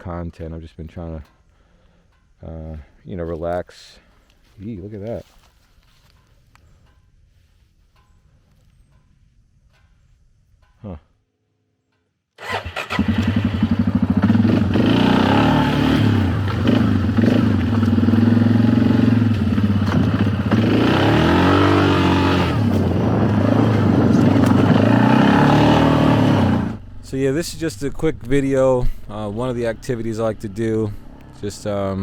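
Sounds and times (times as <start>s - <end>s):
quad bike engine revving: 12.4s - 32.0s.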